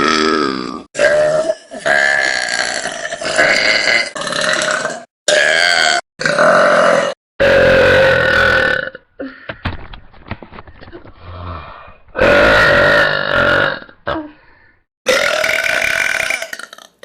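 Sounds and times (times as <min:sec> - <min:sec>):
woman burping: 0:15.1 - 0:17.0.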